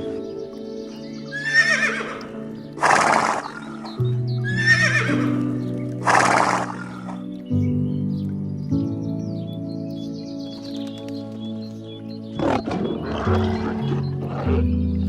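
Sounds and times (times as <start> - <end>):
background music: 0.0 - 15.0
horse whinnying: 1.3 - 7.2, 12.4 - 14.6
horse harsh breath: 2.8 - 4.0, 6.0 - 7.2.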